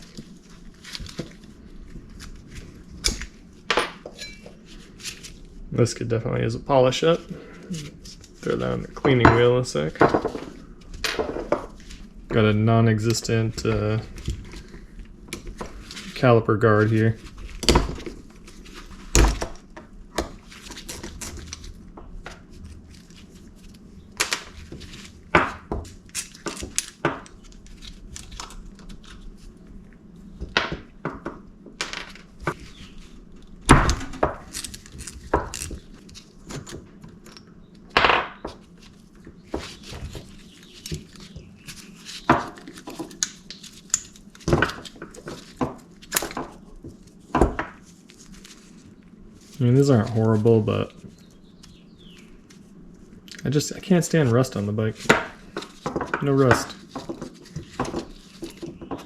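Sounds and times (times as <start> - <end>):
metal parts and tools clinking: 3.8 - 4.5.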